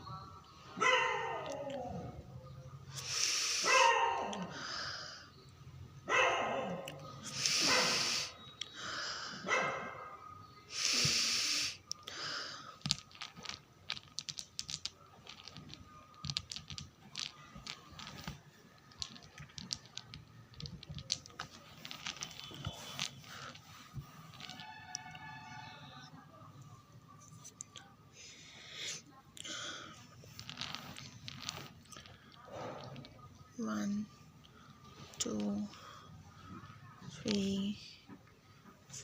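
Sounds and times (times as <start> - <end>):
mothballs and packaging rattling: 2.9 - 3.7, 6.9 - 9.4, 10.7 - 26.2, 28.9 - 39.0
loud deep sniffs: 7.4 - 8.4.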